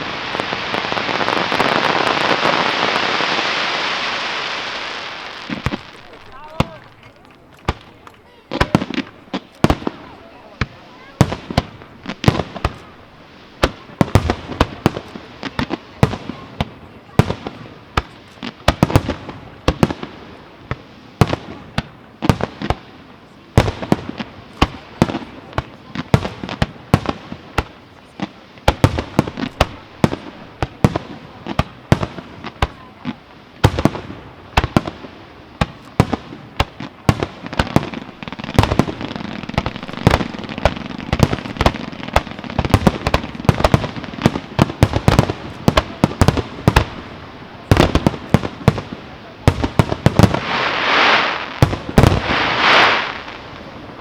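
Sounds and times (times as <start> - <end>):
fireworks bursting with sharp bangs: 0.0 - 54.0.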